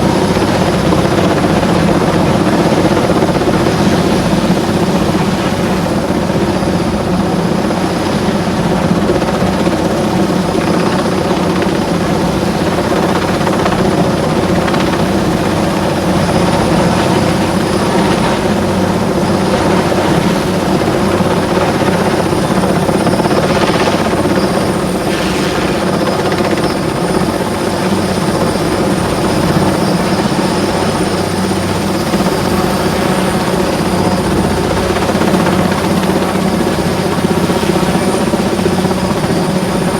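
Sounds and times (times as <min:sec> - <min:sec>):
helicopter rotor and engine: 0:00.0 - 0:39.9
thin high whine: 0:15.8 - 0:35.6.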